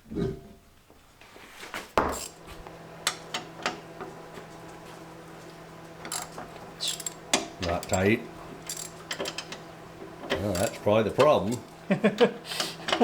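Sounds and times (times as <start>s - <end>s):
metal hand tools clicking: 6.1s - 8.0s, 8.7s - 9.6s, 10.3s - 11.7s.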